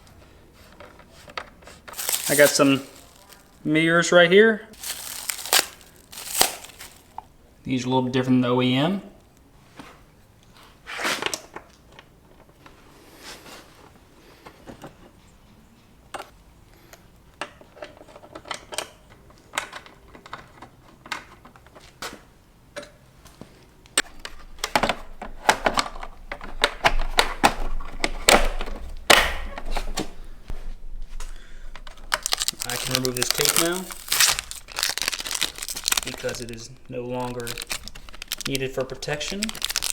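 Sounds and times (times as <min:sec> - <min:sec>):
plastic parts clicking and rattling: 0:00.6 - 0:03.6, 0:04.8 - 0:07.3, 0:17.4 - 0:22.0, 0:24.0 - 0:30.1, 0:31.7 - 0:39.9.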